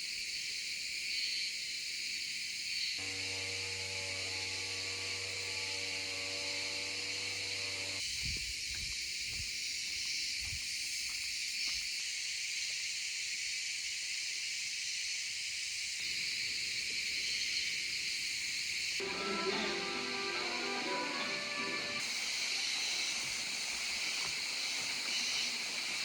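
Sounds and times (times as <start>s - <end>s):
steady high hiss: 13.4s - 26.0s.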